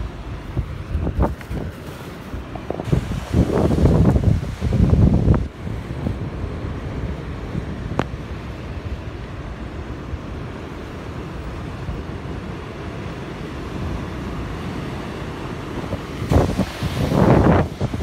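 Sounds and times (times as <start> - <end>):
rumbling gust: 0.0 - 10.8, 15.8 - 18.0
sea surf rushing: 0.0 - 18.0
wind buffeting microphone: 0.0 - 18.0.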